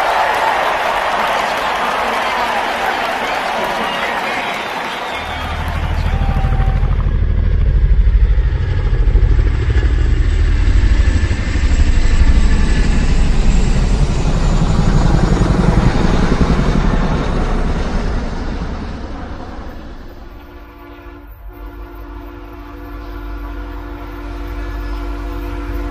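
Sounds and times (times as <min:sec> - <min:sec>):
engine deep pulsing rumble: 0:05.2 - 0:20.7.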